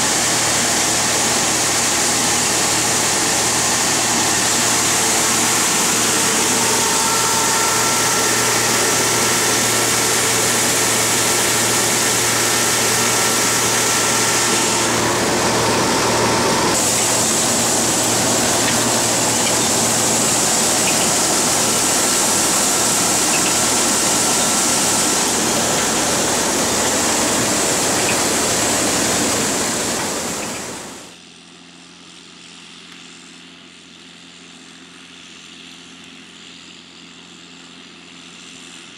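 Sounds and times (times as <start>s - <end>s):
engine and machinery noise: 0.0s - 38.9s
faint whining tones: 2.5s - 31.1s.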